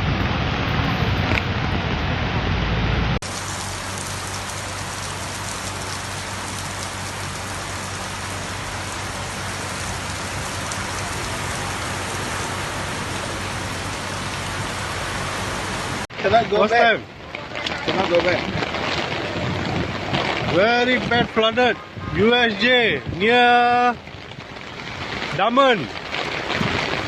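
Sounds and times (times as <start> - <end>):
deep rushing water: 0.0 - 27.0
heavy rain pouring: 0.0 - 27.0.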